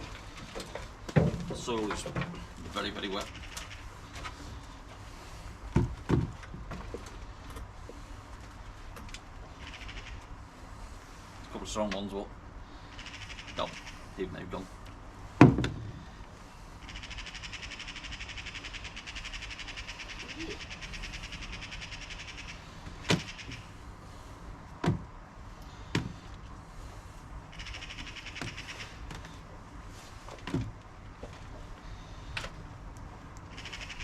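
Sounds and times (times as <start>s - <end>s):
knocks of garden containers: 1.1s - 2.4s, 5.8s - 6.4s, 15.4s - 15.9s.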